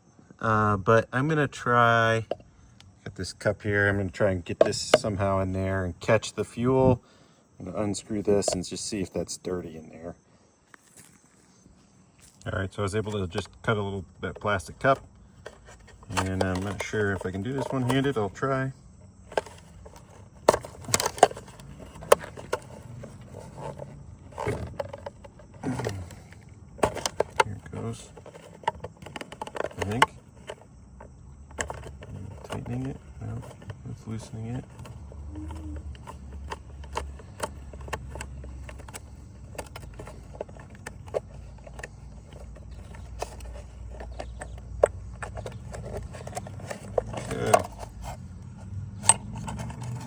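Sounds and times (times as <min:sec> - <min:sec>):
plastic filter bowl clicking: 0:19.3 - 0:23.8, 0:24.4 - 0:30.6.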